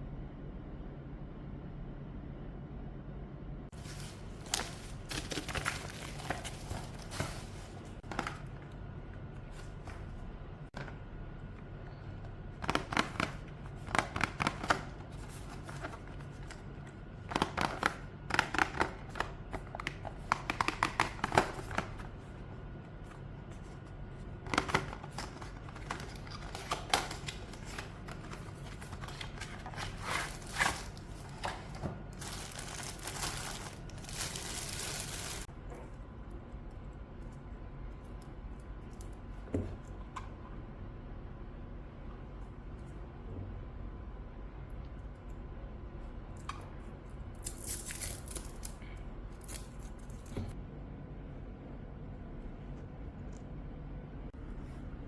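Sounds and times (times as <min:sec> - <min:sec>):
packaging rustling: 0:03.8 - 0:08.6, 0:24.5 - 0:35.5.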